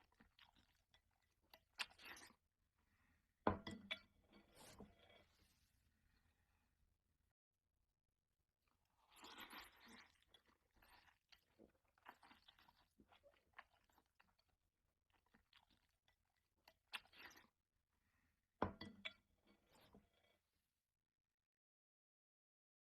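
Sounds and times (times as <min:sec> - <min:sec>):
person chewing noodles: 0:00.0 - 0:02.4, 0:08.7 - 0:17.6.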